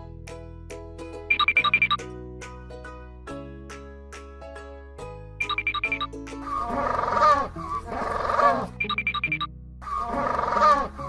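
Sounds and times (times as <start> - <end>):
children's music with chiming notes: 1.2 - 3.1, 5.4 - 8.0, 8.6 - 9.5
rough wavering animal call: 6.7 - 9.0, 9.8 - 11.0.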